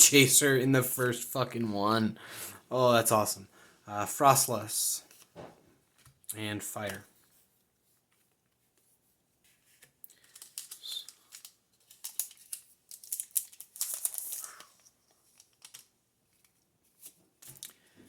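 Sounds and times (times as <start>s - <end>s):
cards rustling: 5.0s - 7.4s, 8.0s - 18.0s
foil wrapper crinkling and tearing: 10.1s - 15.9s.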